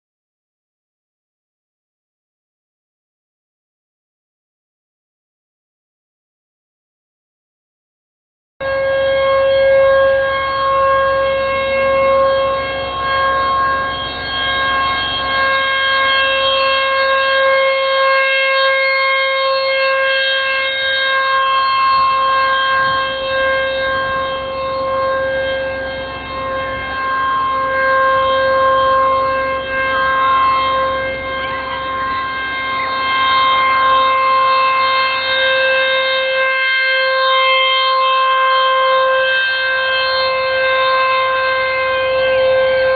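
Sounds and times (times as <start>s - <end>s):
warning siren steady tone: 8.6s - 42.9s.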